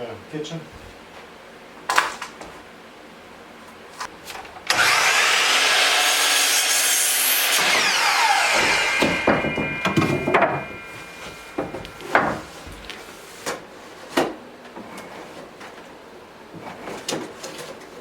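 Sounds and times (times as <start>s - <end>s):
motor winding down whine: 4.7s - 12.2s
wood planer running: 4.7s - 12.9s
sharp knocks: 7.6s - 12.8s.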